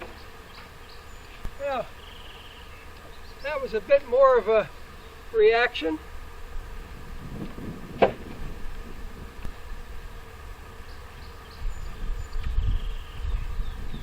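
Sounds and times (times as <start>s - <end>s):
wind rumble on microphone: 6.4s - 10.6s, 11.2s - 14.0s.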